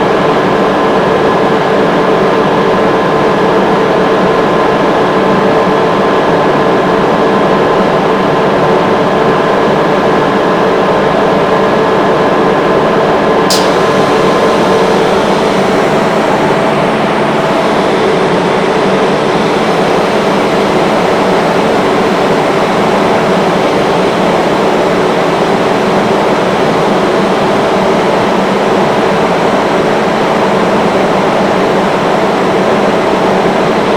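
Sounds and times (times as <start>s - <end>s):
sharp click: 13.5s - 16.6s
high whining tones: 13.5s - 24.1s
air compressor running: 13.5s - 33.9s.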